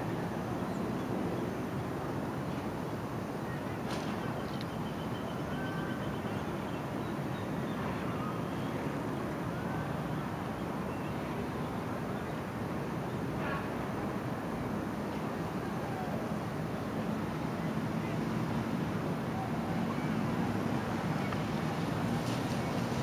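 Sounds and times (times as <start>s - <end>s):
wind: 0.0s - 23.0s
rain: 12.8s - 23.0s.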